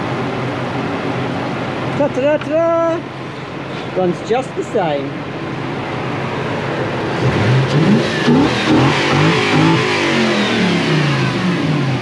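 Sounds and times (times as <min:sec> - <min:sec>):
car engine revving: 0:05.7 - 0:12.0.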